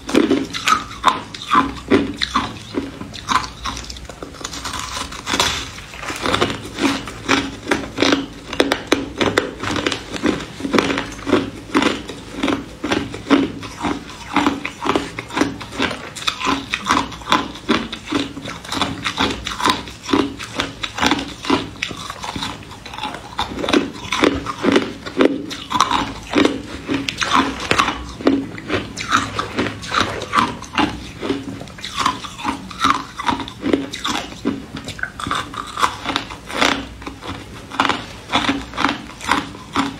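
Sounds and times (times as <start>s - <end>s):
ice crunching while chewed: 0.0s - 39.9s.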